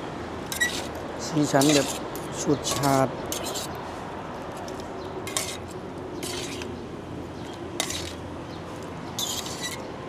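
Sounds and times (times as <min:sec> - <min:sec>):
utensils clinking against bowl: 0:00.5 - 0:03.7, 0:05.3 - 0:06.7.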